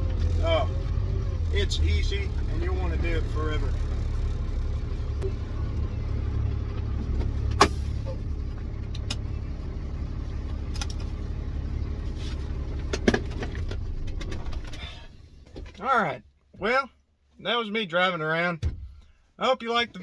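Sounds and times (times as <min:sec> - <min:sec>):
diesel truck engine droning: 0:00.0 - 0:16.9.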